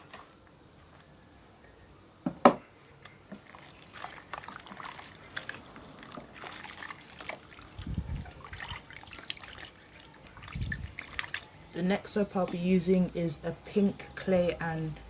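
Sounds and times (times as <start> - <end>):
hands lathering soap squishing: 3.3 - 12.6.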